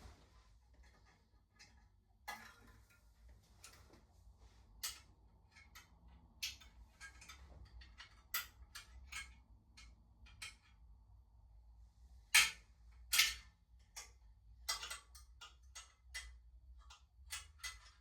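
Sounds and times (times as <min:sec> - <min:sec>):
tools and parts clicking: 0:04.8 - 0:10.8, 0:12.4 - 0:18.0.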